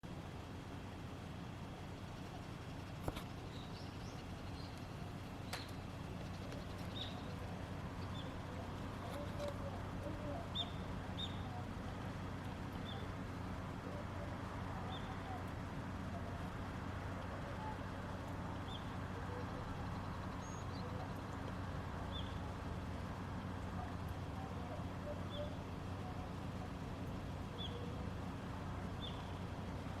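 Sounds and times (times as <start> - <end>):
steady low hum: 0.0 - 30.0
small bird chirping: 2.8 - 11.6, 18.6 - 21.2, 29.0 - 29.4.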